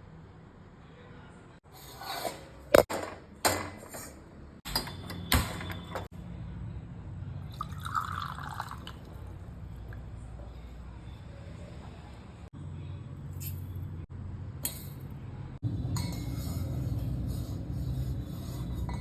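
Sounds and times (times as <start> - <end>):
kitchen clicks and knocks: 2.2 - 6.1
soft pouring rush: 7.4 - 10.6.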